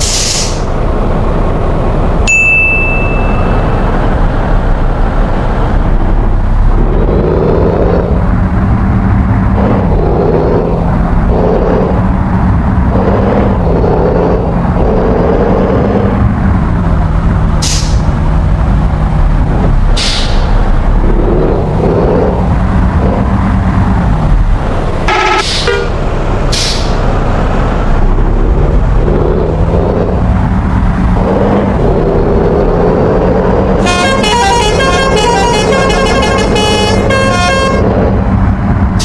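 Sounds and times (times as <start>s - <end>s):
bus engine running: 0.0s - 39.0s
single ding: 2.3s - 3.7s
musical bus horn: 25.1s - 26.1s, 33.8s - 38.0s.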